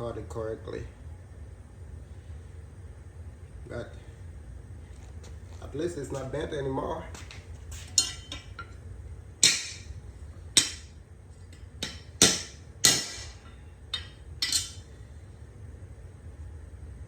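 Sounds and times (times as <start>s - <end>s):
hammer clanking on metal blade: 10.6s - 10.9s, 11.8s - 14.8s.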